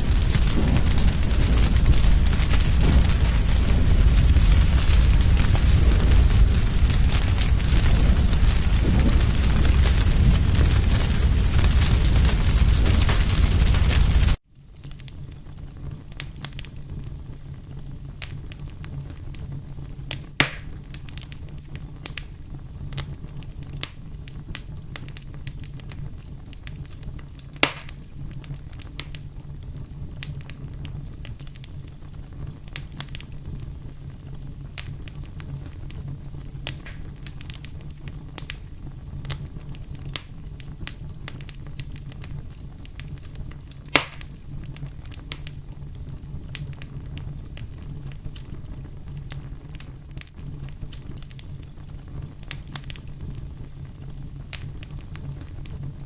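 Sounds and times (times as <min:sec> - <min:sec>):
burning wood popping: 0:00.0 - 0:56.0
campfire crackling: 0:00.0 - 0:56.0
low steady rumble: 0:00.0 - 0:56.0.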